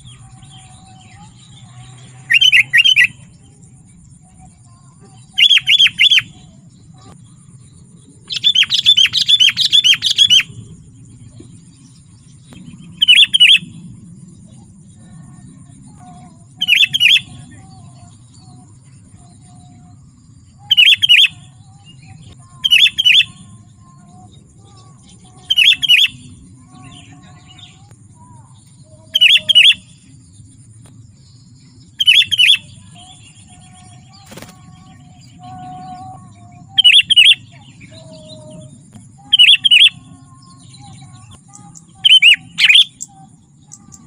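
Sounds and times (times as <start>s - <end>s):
bird chattering calls: 5.2s - 7.1s, 8.2s - 10.5s, 24.8s - 29.9s, 32.0s - 38.5s, 39.2s - 44.0s.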